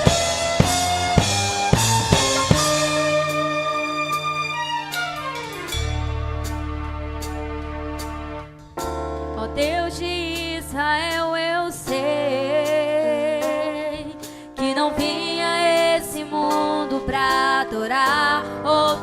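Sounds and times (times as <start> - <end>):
band playing guitar bass drums: 0.0 - 9.0
woman singing with vibrato: 9.4 - 19.0.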